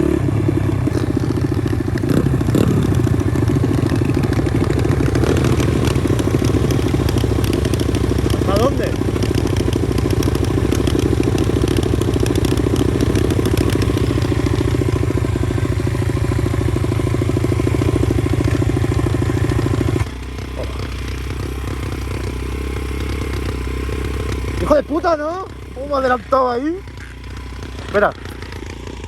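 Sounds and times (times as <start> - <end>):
small motorbike engine running: 0.0 - 29.0.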